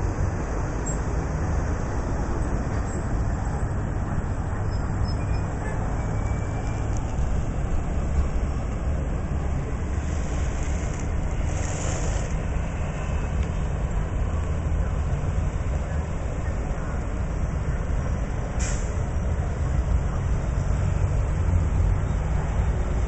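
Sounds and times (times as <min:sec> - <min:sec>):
train wheels rumbling on rails: 0:02.2 - 0:14.8
short hiss: 0:18.6 - 0:19.0.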